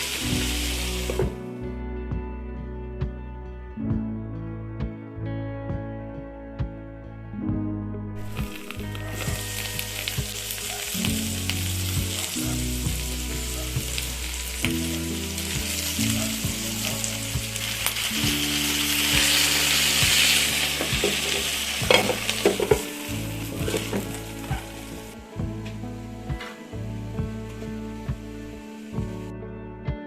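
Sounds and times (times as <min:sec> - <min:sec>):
sizzling crackling hiss: 0:00.0 - 0:01.5, 0:08.2 - 0:29.3
soft background music: 0:00.0 - 0:30.0.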